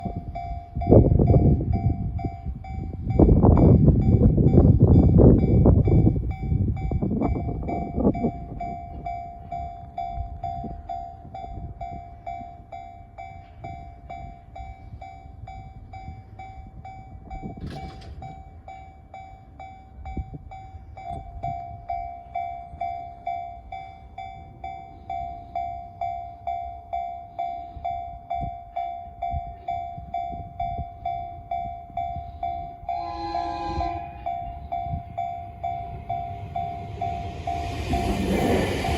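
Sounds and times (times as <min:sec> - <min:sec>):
level crossing alarm bell: 0:00.0 - 0:38.9
low rumble: 0:34.2 - 0:38.9.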